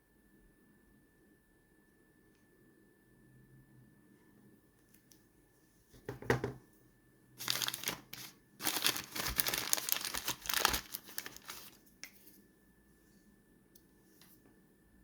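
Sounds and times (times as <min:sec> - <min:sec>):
crinkling and rustling: 0:07.4 - 0:12.4.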